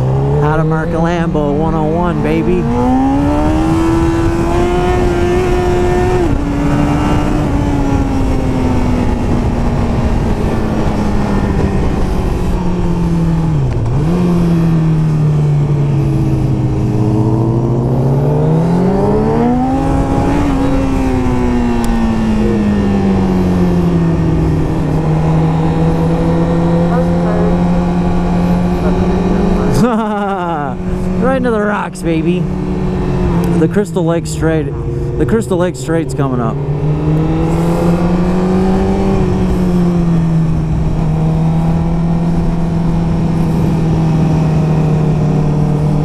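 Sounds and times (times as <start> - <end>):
motorcycle engine running: 0.0 - 46.0
wind rush: 2.6 - 29.8.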